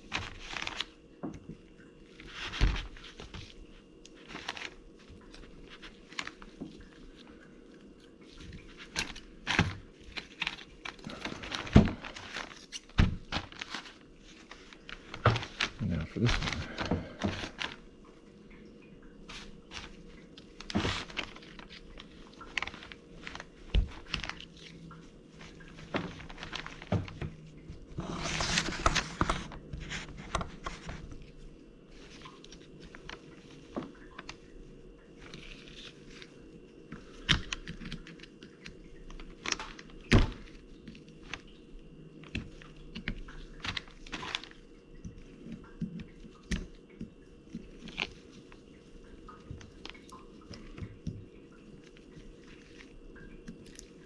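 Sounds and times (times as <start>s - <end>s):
rustling scrape: 2.2s - 7.3s, 19.3s - 34.4s.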